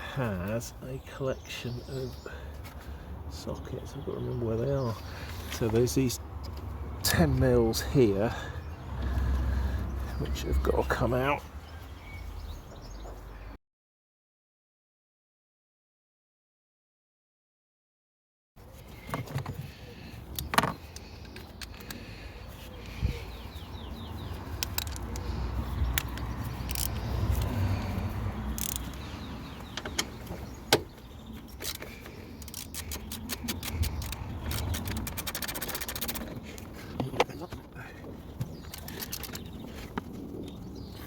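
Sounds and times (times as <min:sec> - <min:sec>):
ratchet clicks: 0:24.6 - 0:25.2, 0:25.9 - 0:27.6, 0:28.5 - 0:29.0, 0:31.5 - 0:36.3
metal clinks of wrench sockets: 0:28.6 - 0:29.0.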